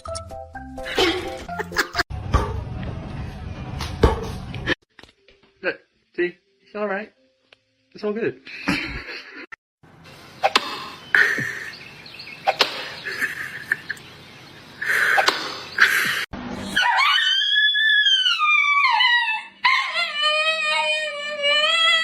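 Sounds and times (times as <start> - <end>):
dog howling: 16.8 - 22.0.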